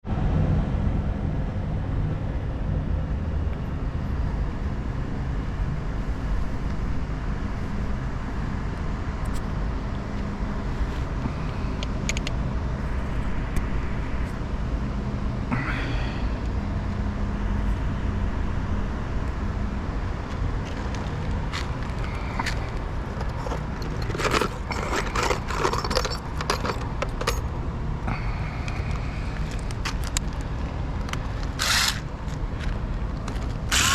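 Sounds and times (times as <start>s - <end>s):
low machinery hum: 0.0s - 33.9s
metallic clinks and rattles: 22.0s - 27.5s.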